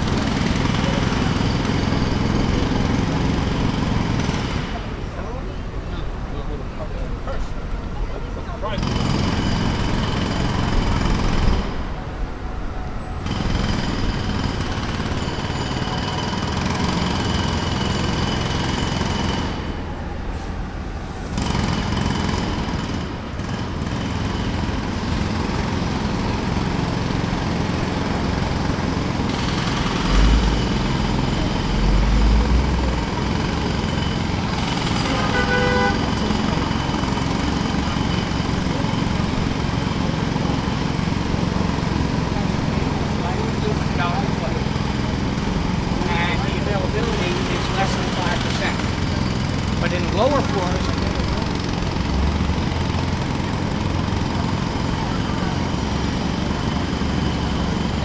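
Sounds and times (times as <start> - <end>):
jackhammer pounding: 0.0 - 6.5, 8.6 - 58.0
low engine rumble: 24.5 - 58.0.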